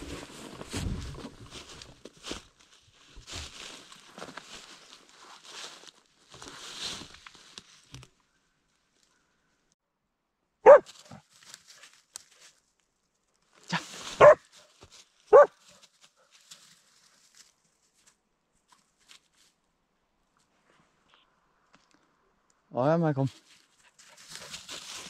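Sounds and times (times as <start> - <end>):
dog barking: 10.6 - 11.2, 14.2 - 14.5, 15.3 - 15.6.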